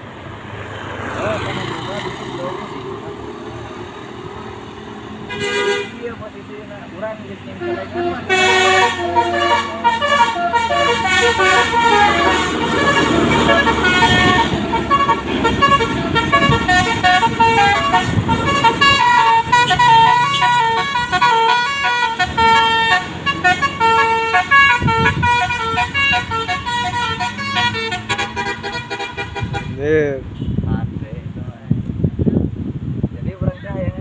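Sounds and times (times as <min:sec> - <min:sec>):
bus engine running: 0:00.0 - 0:29.8
multi-tone musical bus horn: 0:05.2 - 0:06.1, 0:07.5 - 0:30.6.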